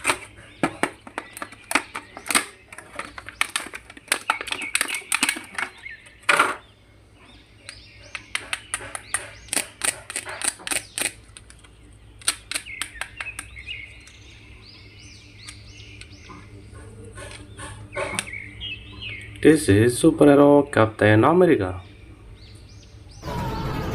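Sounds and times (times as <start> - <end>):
plastic clicking and rattling: 0.0 - 6.6, 7.6 - 14.2.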